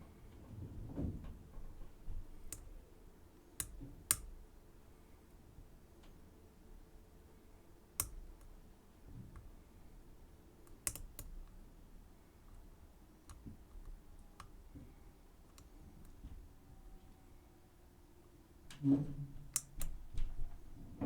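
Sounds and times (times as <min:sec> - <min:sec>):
lock picks clicking in lock: 0:10.7 - 0:11.4.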